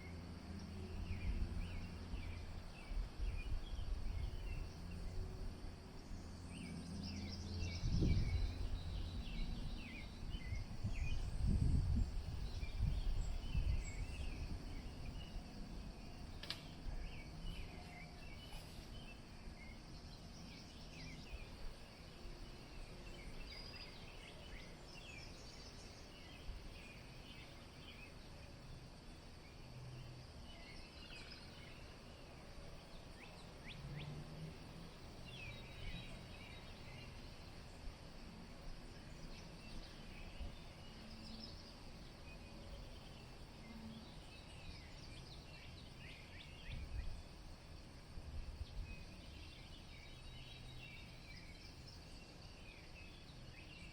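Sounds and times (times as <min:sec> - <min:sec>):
small birds chirping: 0:00.0 - 0:28.3, 0:48.5 - 0:53.9
wind gusting against microphone: 0:01.0 - 0:05.9, 0:07.1 - 0:16.2.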